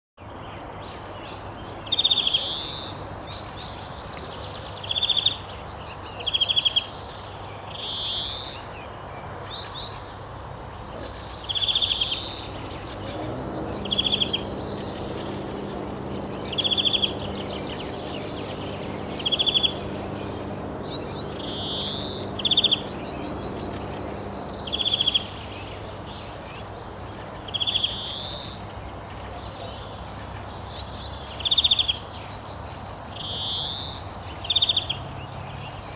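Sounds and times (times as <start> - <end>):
bird calling with trills: 11.1 - 25.7
low steady hum: 12.0 - 27.5.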